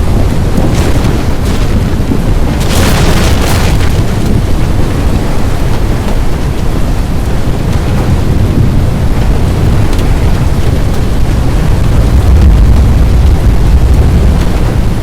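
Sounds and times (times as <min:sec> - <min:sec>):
strong wind blasting microphone: 0:00.0 - 0:15.0.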